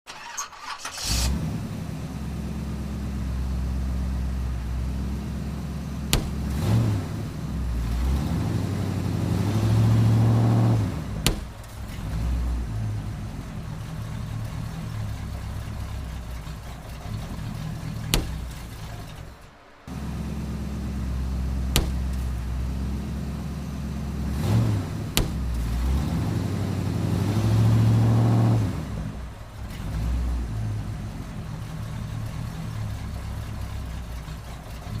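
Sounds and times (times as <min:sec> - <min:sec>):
car engine revving: 0:00.1 - 0:35.0
balloons bursting: 0:06.0 - 0:07.6, 0:11.1 - 0:11.9, 0:18.0 - 0:18.7, 0:21.0 - 0:22.8, 0:23.9 - 0:25.9.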